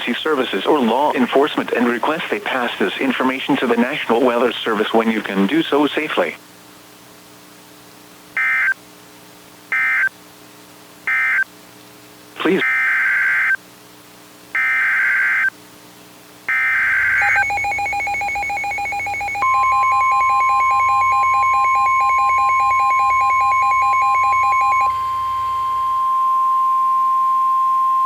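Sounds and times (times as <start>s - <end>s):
steady single-tone alert: 16.5s - 26.0s
harsh two-tone attention signal: 16.5s - 28.0s.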